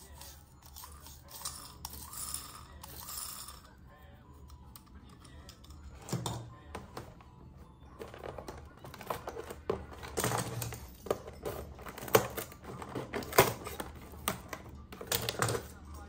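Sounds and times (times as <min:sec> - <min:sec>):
plastic toys clicking and tapping: 0:08.0 - 0:15.8.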